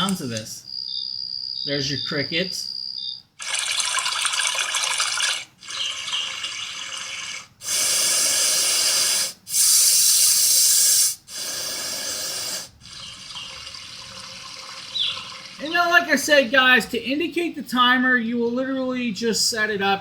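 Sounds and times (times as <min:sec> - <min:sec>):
white noise machine hissing: 0:05.6 - 0:16.8.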